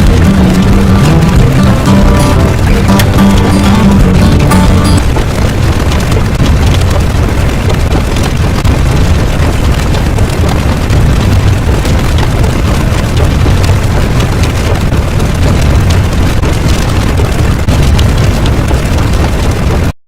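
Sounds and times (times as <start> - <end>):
faint crackling: 0.0 - 8.8
deep rumbling noise: 0.0 - 19.9.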